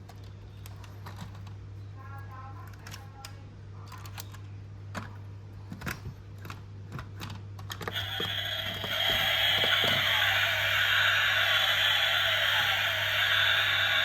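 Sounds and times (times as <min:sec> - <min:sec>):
even hiss: 0:07.9 - 0:14.0
steady low hum: 0:07.9 - 0:14.0.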